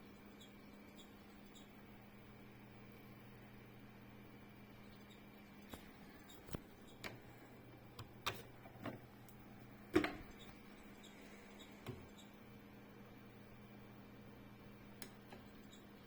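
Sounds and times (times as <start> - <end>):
faint steady hum: 0.0 - 16.0.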